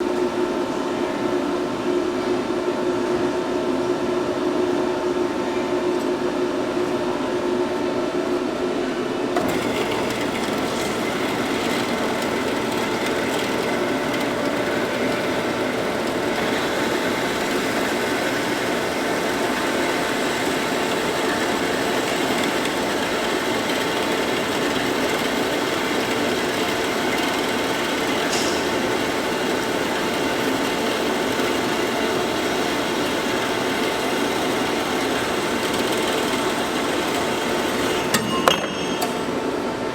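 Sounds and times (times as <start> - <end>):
machine tool humming: 9.4 - 39.9.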